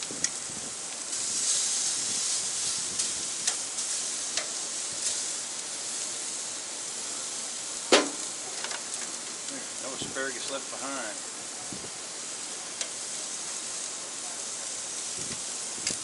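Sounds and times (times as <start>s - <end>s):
food sizzling on a grill: 0.0s - 16.0s
tongs clicking on a grate: 3.0s - 3.6s, 4.3s - 5.2s, 12.8s - 13.0s.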